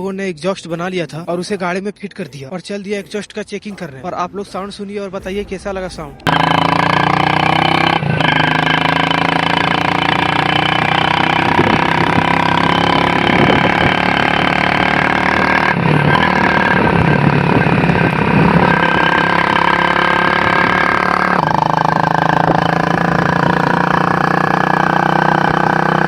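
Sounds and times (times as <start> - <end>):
motorcycle engine running: 6.2 - 26.0.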